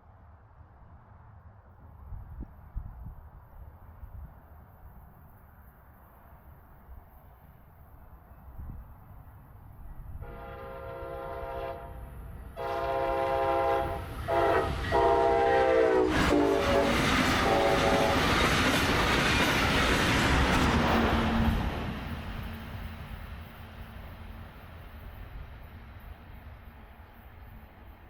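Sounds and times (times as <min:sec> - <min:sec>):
train wheels rushing on rails: 0:09.3 - 0:28.0
train horn: 0:10.1 - 0:18.4.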